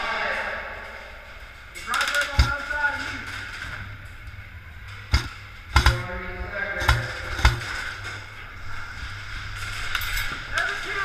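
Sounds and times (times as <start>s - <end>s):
airsoft guns firing: 1.9s - 3.5s, 5.1s - 8.0s.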